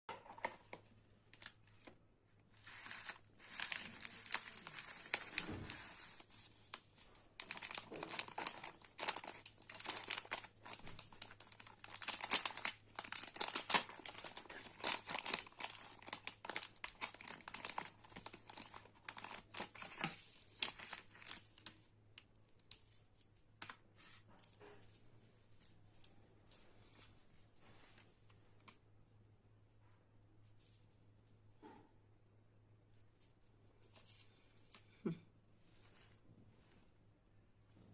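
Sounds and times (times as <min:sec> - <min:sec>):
plastic packaging crinkling: 0:00.2 - 0:26.6.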